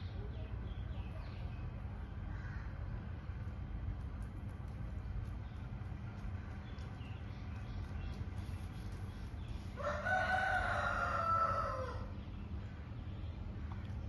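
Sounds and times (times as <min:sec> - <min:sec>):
steady low rumble: 0:00.0 - 0:10.1.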